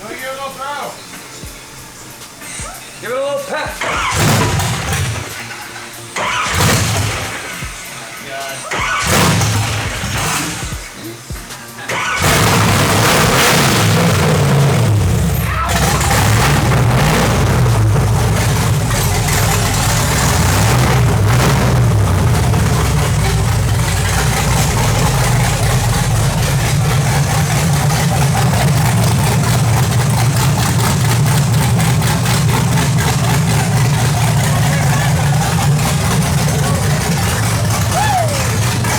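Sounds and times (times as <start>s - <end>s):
engine revving and idling: 3.8s - 38.9s.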